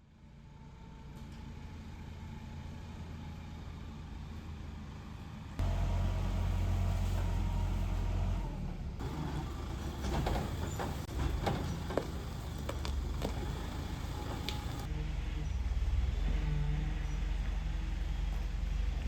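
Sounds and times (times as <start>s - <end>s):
engine humming: 2.8s - 19.0s
knocks and rattles: 9.0s - 14.9s.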